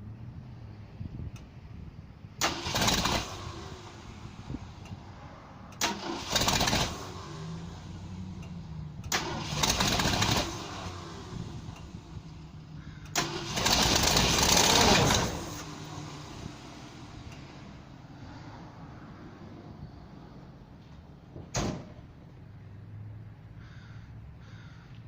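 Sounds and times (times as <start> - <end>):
engine cranking without starting: 2.3 - 18.0.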